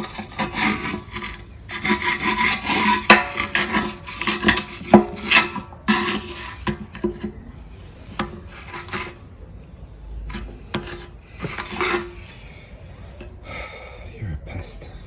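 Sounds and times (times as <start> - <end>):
hand tools scraping on metal: 0.0 - 9.4, 10.2 - 12.6.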